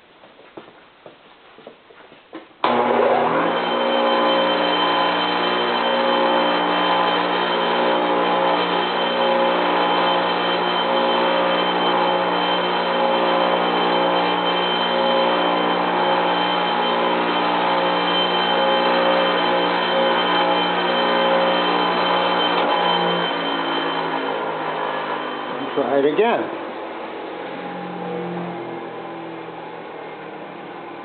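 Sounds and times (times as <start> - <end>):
bench grinder motor hum: 2.6 - 31.0.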